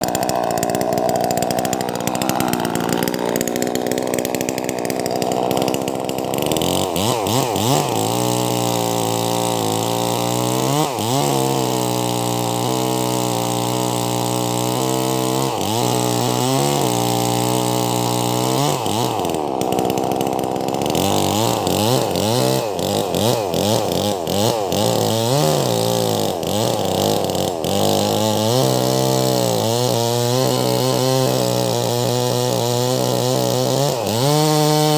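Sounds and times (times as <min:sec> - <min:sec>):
chainsaw cutting log: 0:00.0 - 0:34.9.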